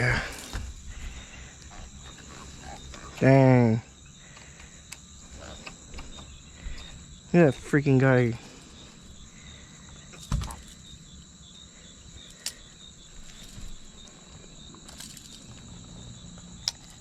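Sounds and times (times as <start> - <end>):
insects chirping: 0.0 - 17.0.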